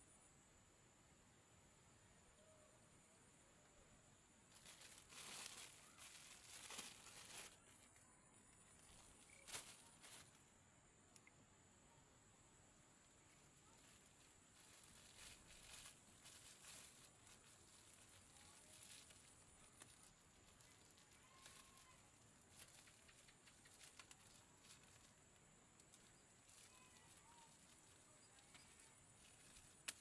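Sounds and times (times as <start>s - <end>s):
faint clicks and rustles: 4.4s - 10.4s, 13.0s - 30.0s.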